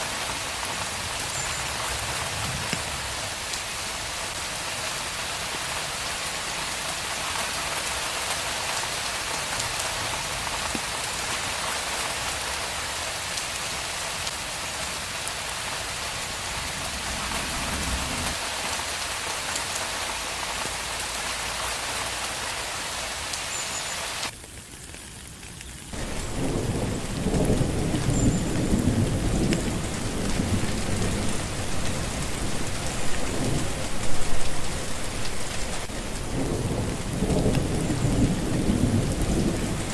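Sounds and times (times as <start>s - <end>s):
heavy rain hissing: 0.0s - 24.4s, 25.6s - 39.9s
thunder rumbling: 16.1s - 18.4s, 26.0s - 39.9s.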